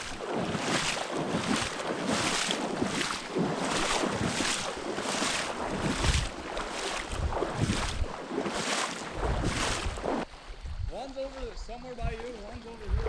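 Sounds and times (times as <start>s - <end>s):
swishing footsteps in marsh: 0.0s - 10.3s
wind buffeting microphone: 0.0s - 13.0s.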